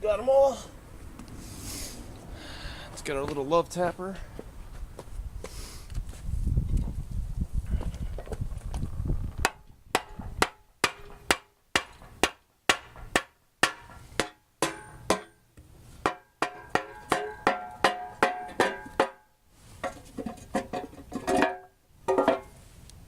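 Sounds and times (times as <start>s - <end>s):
hammer tapping on metal: 9.4s - 15.4s, 16.1s - 19.2s.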